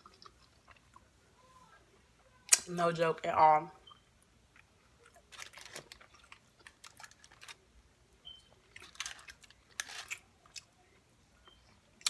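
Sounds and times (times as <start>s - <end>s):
person chewing food: 0.0s - 1.1s, 4.5s - 7.6s
crisp clicks and smacks: 4.5s - 7.6s, 8.7s - 10.7s.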